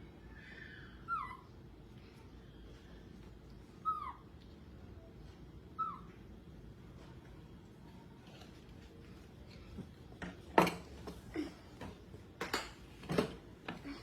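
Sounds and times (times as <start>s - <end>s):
low background noise: 0.0s - 14.0s
baby monkey crying: 0.5s - 1.5s, 3.8s - 4.3s, 5.8s - 6.1s.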